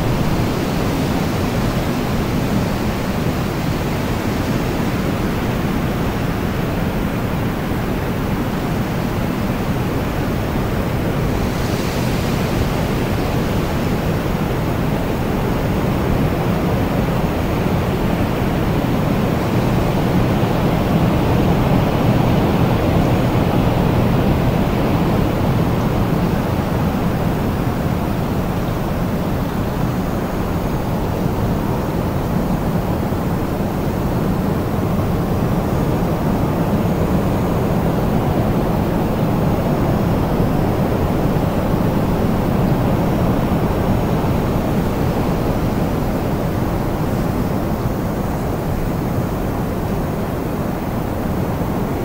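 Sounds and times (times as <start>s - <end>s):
wind blowing: 0.0s - 3.9s.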